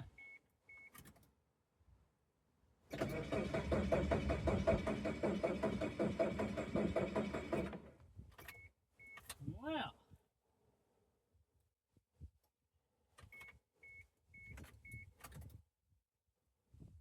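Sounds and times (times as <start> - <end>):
car engine cranking: 2.9 - 8.0.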